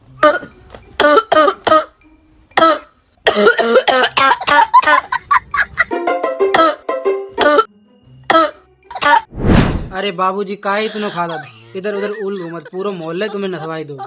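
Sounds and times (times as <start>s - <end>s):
man clearing throat: 0.2s - 2.0s, 2.6s - 4.8s
man coughing: 2.6s - 5.1s, 10.8s - 11.4s.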